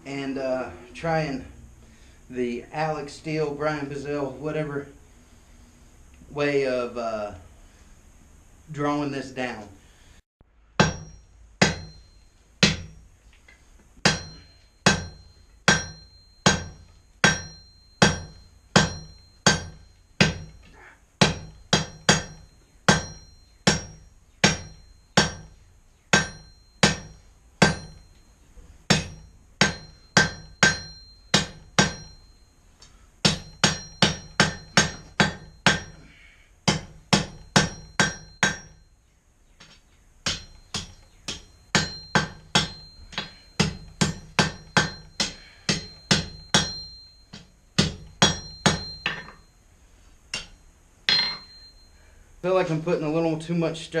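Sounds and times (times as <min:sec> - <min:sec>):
hammer striking steel on anvil: 0:10.8 - 0:13.1, 0:14.0 - 0:28.3, 0:28.9 - 0:38.9, 0:39.6 - 0:49.5, 0:50.3 - 0:51.9.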